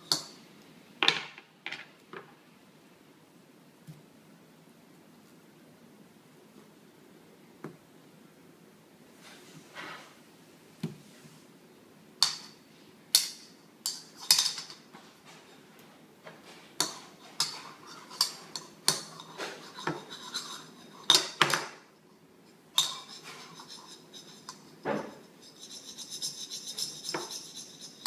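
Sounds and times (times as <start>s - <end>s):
metal utensils clinking on pots: 13.2s - 14.8s, 16.8s - 21.7s, 22.7s - 28.0s.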